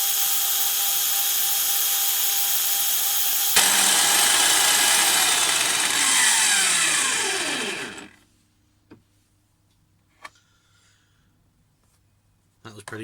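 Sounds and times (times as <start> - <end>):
drill motor whine winding down: 0.0 - 8.2.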